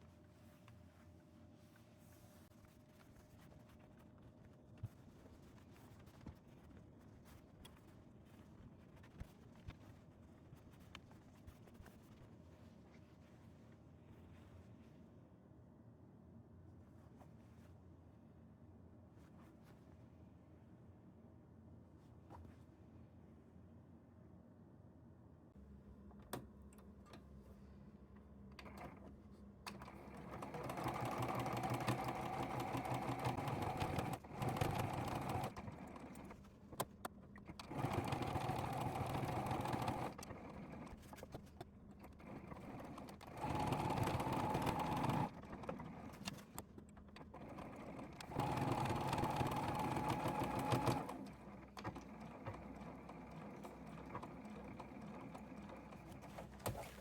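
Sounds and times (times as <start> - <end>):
electric sewing machine stitching: 29.8 - 35.7, 37.6 - 40.3, 42.8 - 45.7, 47.4 - 56.9.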